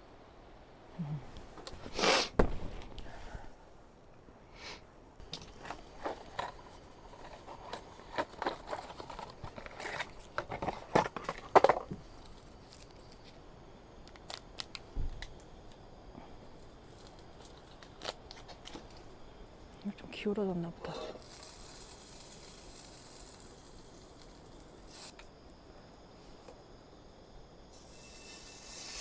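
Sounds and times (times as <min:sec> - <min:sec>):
objects being handled: 0:05.2 - 0:13.4.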